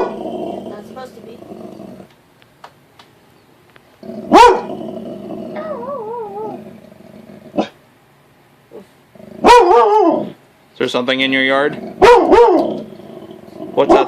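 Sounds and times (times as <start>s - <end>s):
dog growling: 0.0s - 2.1s, 4.0s - 7.8s, 8.7s - 10.4s, 11.6s - 14.0s
dog barking: 4.3s - 4.7s, 9.4s - 10.3s, 12.0s - 12.7s.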